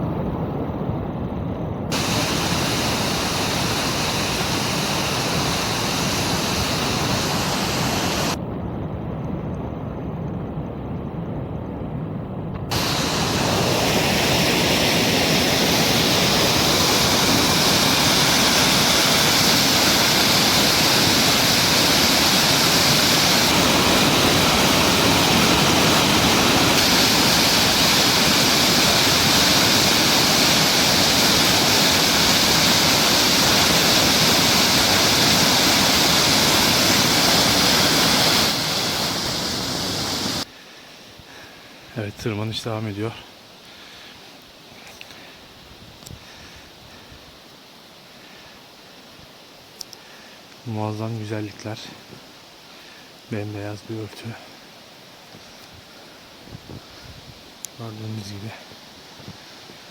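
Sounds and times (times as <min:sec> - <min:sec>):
creek water rushing: 0:01.9 - 0:08.4, 0:12.7 - 0:41.9, 0:54.4 - 0:59.9.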